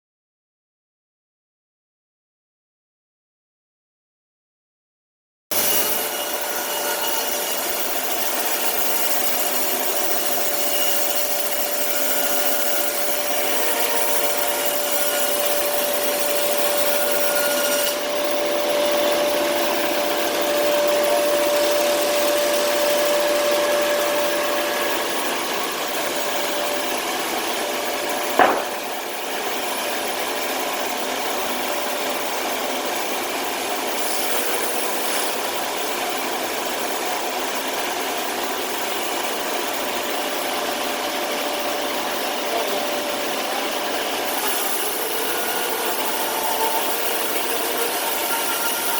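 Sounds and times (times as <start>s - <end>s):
sawmill sawing timber: 5.5s - 29.8s, 40.2s - 48.9s
sharp knock: 28.4s - 29.0s.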